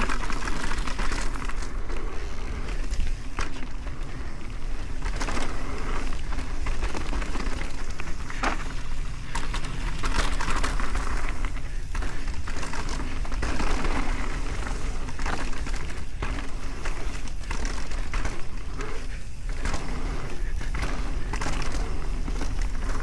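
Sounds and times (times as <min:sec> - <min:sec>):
bike tyre rushing noise: 0:00.0 - 0:23.0.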